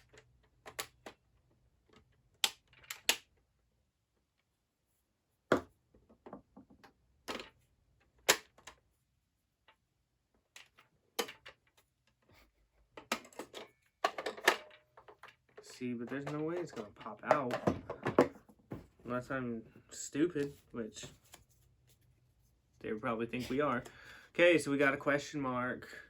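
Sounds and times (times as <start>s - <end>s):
plastic puzzle box clicking: 0.0s - 1.2s, 1.9s - 3.3s.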